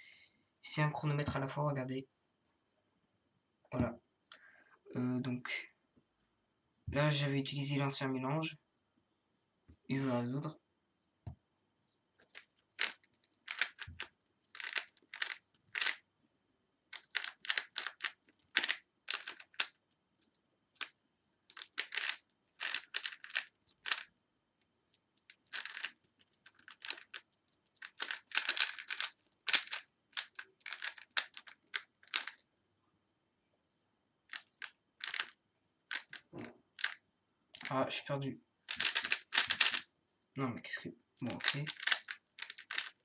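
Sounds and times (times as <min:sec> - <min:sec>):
puzzle cube layers clicking: 0:12.3 - 0:16.0, 0:16.9 - 0:24.1, 0:25.2 - 0:32.4, 0:34.3 - 0:37.0, 0:38.7 - 0:39.9, 0:41.2 - 0:43.0.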